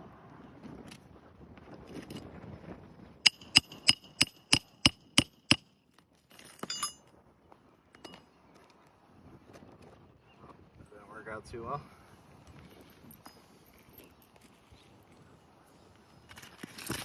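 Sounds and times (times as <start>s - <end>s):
clatter of metal clinks: 3.3s - 5.6s, 6.2s - 7.1s, 12.6s - 14.9s
hammer striking metal tool: 3.3s - 5.6s.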